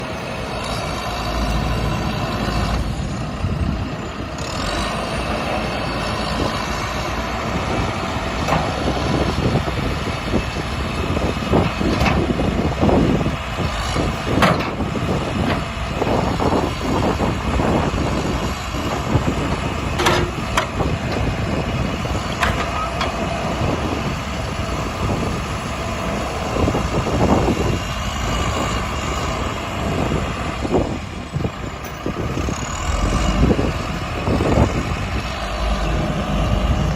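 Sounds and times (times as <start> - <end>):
diesel engine running: 0.0 - 36.9
short clanks and knocks: 20.0 - 20.8.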